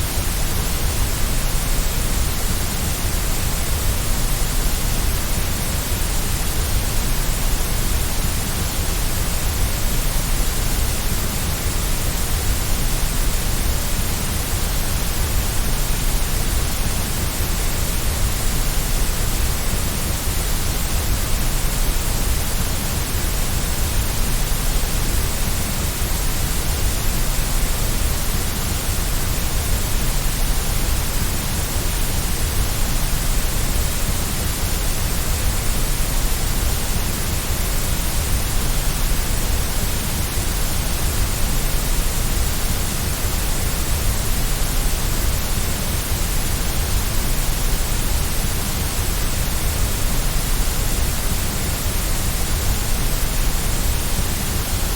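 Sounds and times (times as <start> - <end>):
steady white noise hiss: 0.0 - 54.9.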